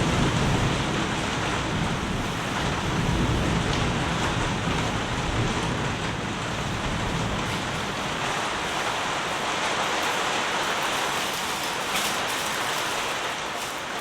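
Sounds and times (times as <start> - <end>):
low wind rumble: 0.0 - 9.7
heavy rain falling: 0.0 - 14.0
raindrops ticking: 0.0 - 14.0.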